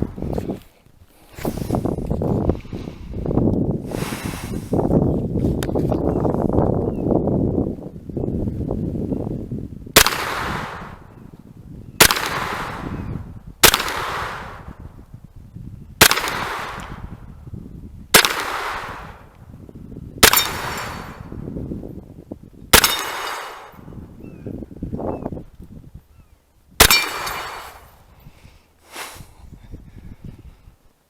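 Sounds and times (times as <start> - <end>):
rifle gunshots with echo: 10.0 - 11.2, 12.0 - 14.8, 16.0 - 17.2, 18.1 - 19.3, 20.2 - 21.4, 22.7 - 24.0, 26.8 - 27.9.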